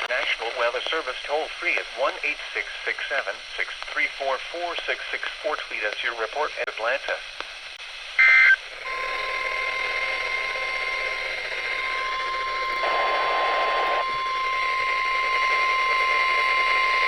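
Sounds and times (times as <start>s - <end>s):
radio static: 0.0s - 7.5s, 8.2s - 17.0s
data tones burst: 8.2s - 17.0s
steady warning alarm tone: 8.2s - 17.0s.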